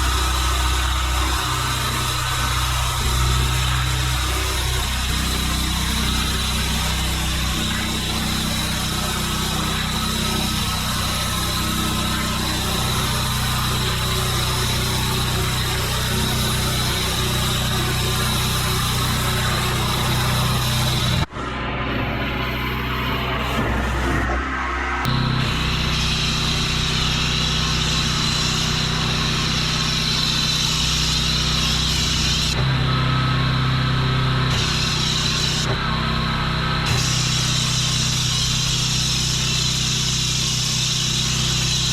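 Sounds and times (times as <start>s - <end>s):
pressure washer engine hum: 0.0s - 21.3s, 25.1s - 41.9s
water spray hissing: 0.0s - 21.3s.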